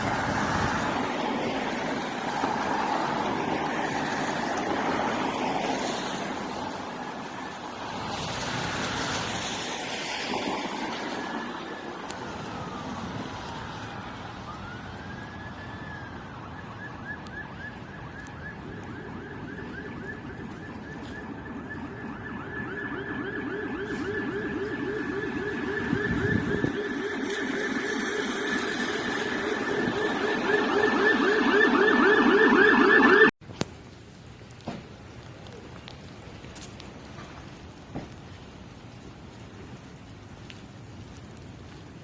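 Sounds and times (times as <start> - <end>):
emergency vehicle siren: 0.0 - 33.4
road traffic noise: 0.0 - 42.0.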